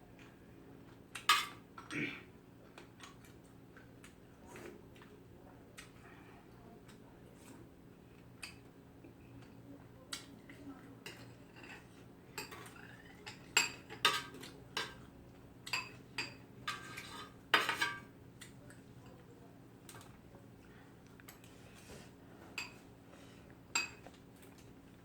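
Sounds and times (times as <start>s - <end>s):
spoon and chopsticks clinking bowls: 11.0s - 15.0s, 15.7s - 18.1s, 22.6s - 22.8s, 23.7s - 24.0s.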